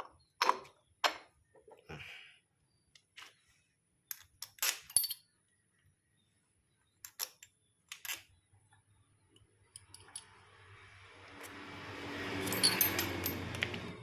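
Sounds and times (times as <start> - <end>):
small metal parts clicking: 7.0 - 8.4, 9.7 - 10.4, 12.4 - 14.0.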